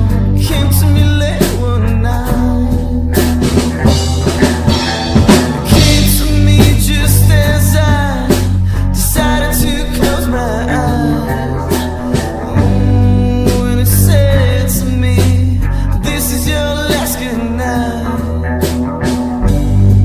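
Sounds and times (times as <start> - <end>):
drum kit hits: 0.0 - 14.6
bass notes: 0.0 - 20.0
guitar: 0.0 - 20.0
rock band playing: 0.0 - 20.0.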